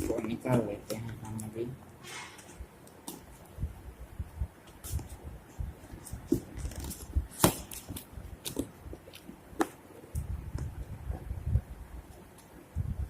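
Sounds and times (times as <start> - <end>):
cardboard packaging rustling: 4.6 - 10.1.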